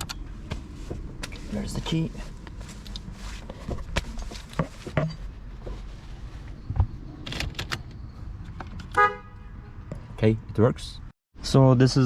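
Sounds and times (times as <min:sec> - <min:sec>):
car horn short beep: 0:08.9 - 0:09.8.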